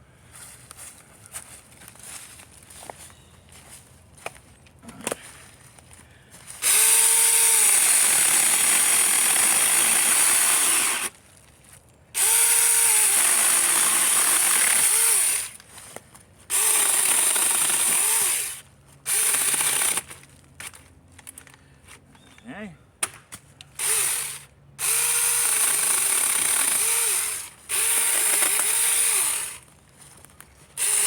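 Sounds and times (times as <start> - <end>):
chainsaw cutting wood: 6.6 - 11.2, 12.2 - 15.6, 16.5 - 20.2, 23.8 - 29.7, 30.8 - 31.0.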